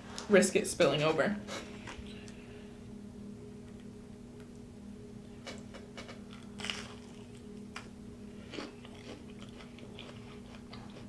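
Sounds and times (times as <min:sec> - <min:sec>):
crunchy bites and chewing: 0:05.5 - 0:11.0.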